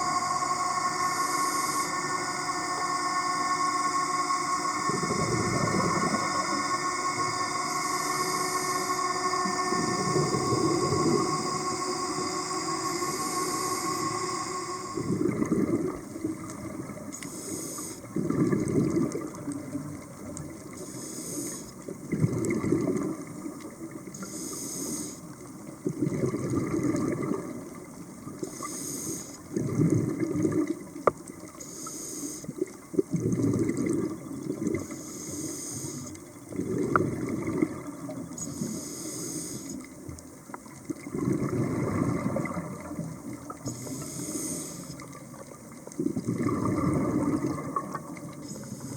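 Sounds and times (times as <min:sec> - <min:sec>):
regulator inhale hiss: 0:00.0 - 0:02.6, 0:09.9 - 0:18.2, 0:20.7 - 0:21.9, 0:24.1 - 0:25.4, 0:28.4 - 0:29.6, 0:31.5 - 0:32.7, 0:34.8 - 0:36.4, 0:38.4 - 0:40.1, 0:43.6 - 0:45.5, 0:48.3 - 0:48.9
exhaled bubbles rumbling: 0:04.7 - 0:07.6, 0:08.4 - 0:17.3, 0:18.0 - 0:20.8, 0:21.7 - 0:24.2, 0:25.3 - 0:28.6, 0:29.4 - 0:31.6, 0:32.5 - 0:35.0, 0:36.1 - 0:38.4, 0:39.9 - 0:44.0, 0:44.9 - 0:48.9.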